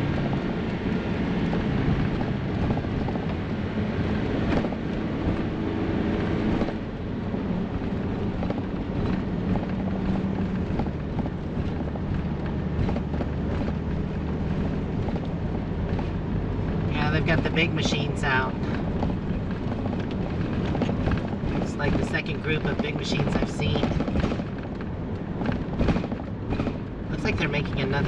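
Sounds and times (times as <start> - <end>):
engine and road drone: 0.0 - 28.0
light rattles and clicks: 7.8 - 28.0.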